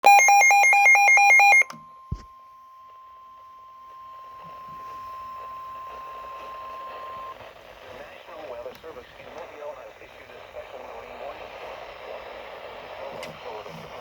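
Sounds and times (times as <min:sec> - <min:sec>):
alternating alarm beeps: 0:00.0 - 0:07.4
static hiss: 0:04.3 - 0:14.0.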